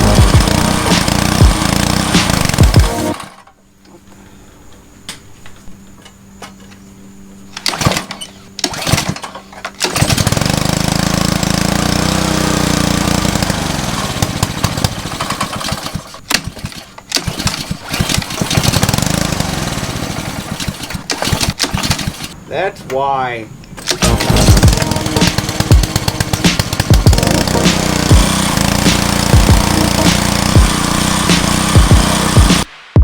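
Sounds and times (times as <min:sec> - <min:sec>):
pressure washer running: 0:00.0 - 0:03.5, 0:07.6 - 0:22.4, 0:23.8 - 0:32.7
faint hum: 0:03.1 - 0:08.6.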